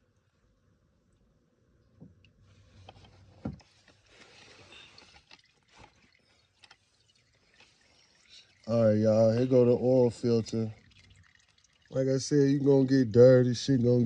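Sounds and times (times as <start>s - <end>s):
oil trickling into bucket: 3.6s - 13.7s.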